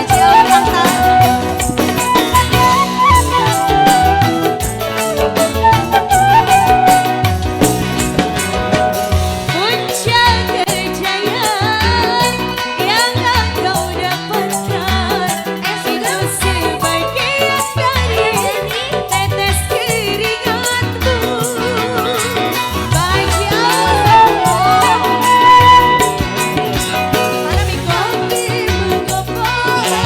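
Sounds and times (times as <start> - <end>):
wavering melody line: 0.0 - 9.9, 22.8 - 27.9
hand drums playing: 0.0 - 30.0.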